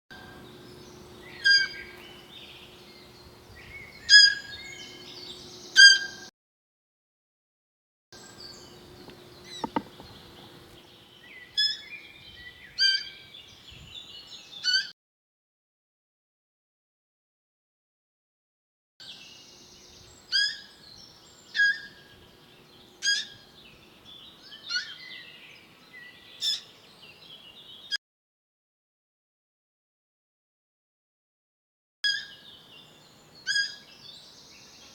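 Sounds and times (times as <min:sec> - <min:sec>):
faint birdsong: 0:00.1 - 0:06.3, 0:08.2 - 0:14.9, 0:19.0 - 0:28.0, 0:32.1 - 0:34.9
deer calling: 0:01.2 - 0:02.0, 0:08.8 - 0:10.8
deer high-pitched calls: 0:01.3 - 0:02.0.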